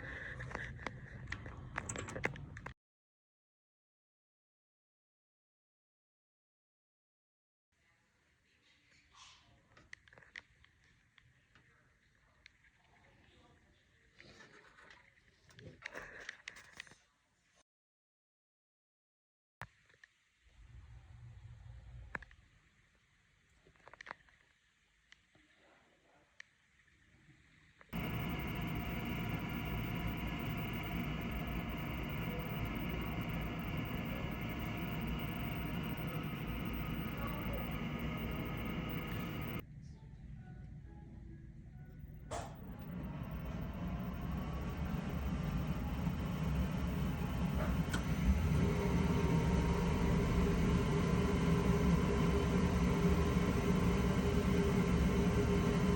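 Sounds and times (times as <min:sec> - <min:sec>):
gas furnace running with hum: 0:27.9 - 0:39.6, 0:42.2 - 0:55.9.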